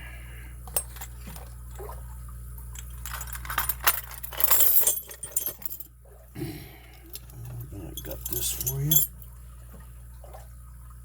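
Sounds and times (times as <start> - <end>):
small metal items clinking: 2.8 - 5.9, 7.9 - 9.2.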